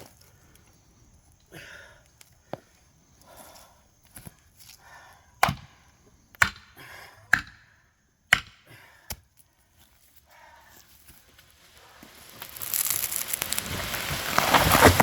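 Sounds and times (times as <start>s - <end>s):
hammer striking felling wedge: 5.4s - 5.7s, 6.4s - 6.7s, 7.3s - 7.7s, 8.3s - 8.6s.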